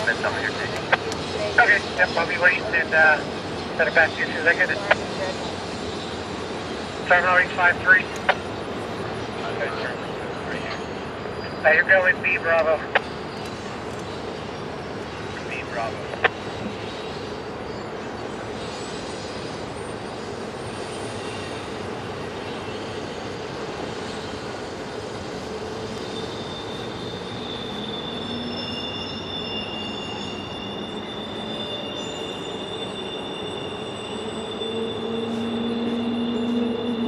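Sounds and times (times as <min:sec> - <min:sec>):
railroad cars rumbling past: 0:00.0 - 0:37.0
high thin wheel squeal: 0:26.0 - 0:37.0.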